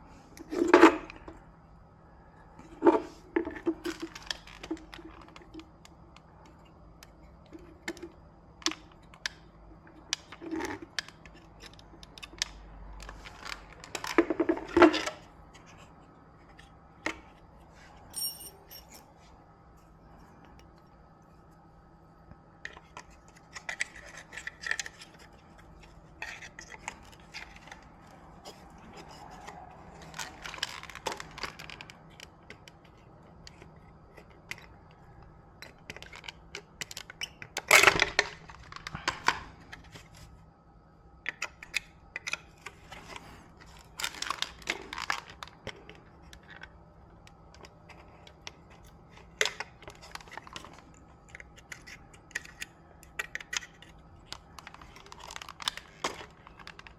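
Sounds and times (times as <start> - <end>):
faint steady hum: 0.0 - 56.9
tools clattering: 18.1 - 19.0
tools clicking and clinking: 18.2 - 19.0.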